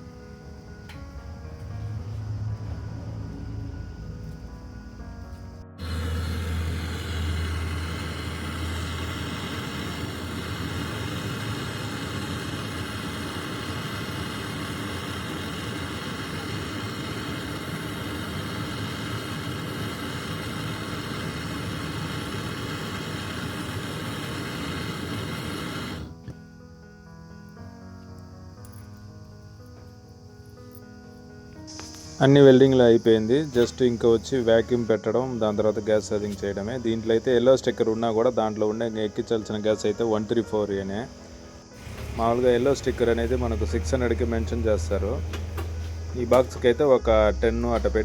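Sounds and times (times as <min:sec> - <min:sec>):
low hum: 0:00.0 - 0:26.1, 0:41.5 - 0:48.0
brazing torch flame roaring: 0:05.7 - 0:26.3, 0:41.3 - 0:48.0.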